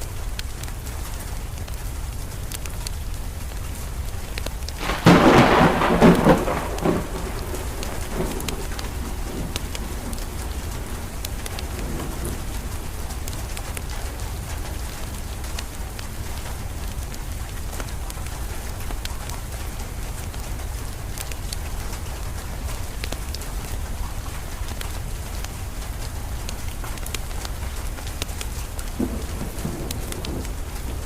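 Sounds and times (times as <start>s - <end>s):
steady rain: 0.0s - 31.0s
wood fire crackling: 0.3s - 31.0s
thunderclap rumbling: 4.8s - 14.7s, 28.8s - 31.0s.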